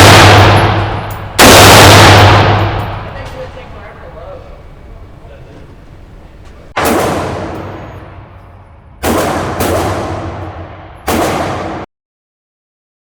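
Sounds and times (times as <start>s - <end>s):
rifle shots echoing: 0.0s - 4.0s, 6.8s - 11.8s.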